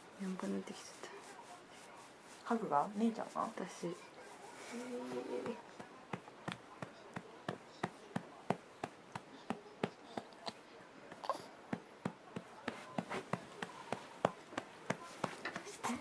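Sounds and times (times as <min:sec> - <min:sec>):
hand patting baby's back: 0:11.1 - 0:16.0.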